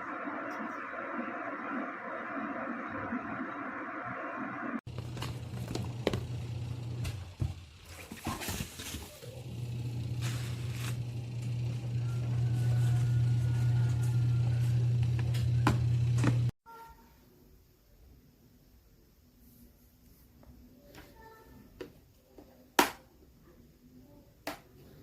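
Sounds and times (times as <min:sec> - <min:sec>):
electric kettle heating water: 0:00.0 - 0:07.8, 0:09.2 - 0:16.5.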